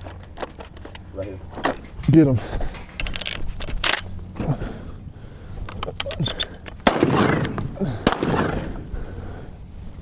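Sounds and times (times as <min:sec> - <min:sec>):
shotgun shots with echo: 0:06.8 - 0:08.7.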